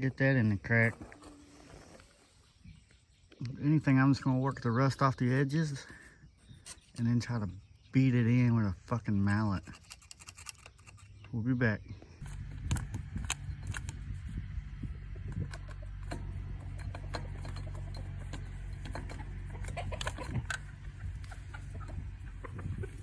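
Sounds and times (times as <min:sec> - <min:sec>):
low hum: 0:12.1 - 0:23.0
chickens clucking: 0:14.3 - 0:23.0.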